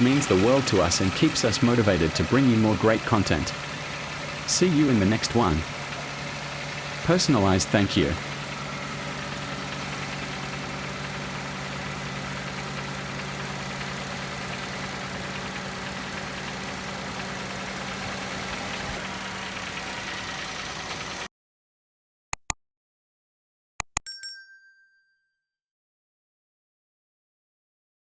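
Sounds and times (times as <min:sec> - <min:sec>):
car engine idling: 0:00.0 - 0:21.3
short ringing chime: 0:24.1 - 0:25.5.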